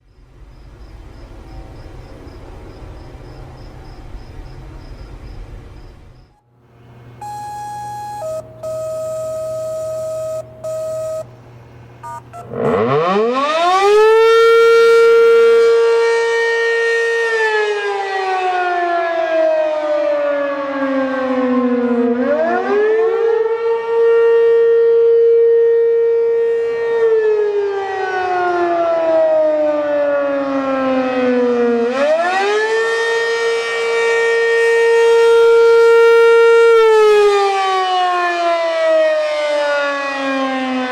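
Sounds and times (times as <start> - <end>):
steady electronic tones: 6.3 - 13.1
rotating warning siren wailing: 6.8 - 40.9.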